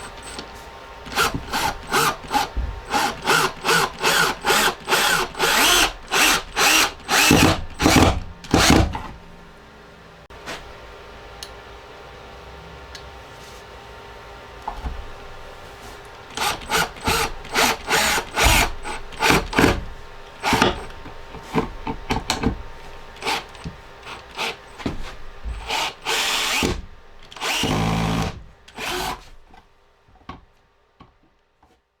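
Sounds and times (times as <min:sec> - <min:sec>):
drill driving screws: 0:00.0 - 0:00.4, 0:01.1 - 0:09.0, 0:16.3 - 0:21.7, 0:23.2 - 0:24.9, 0:25.5 - 0:29.2.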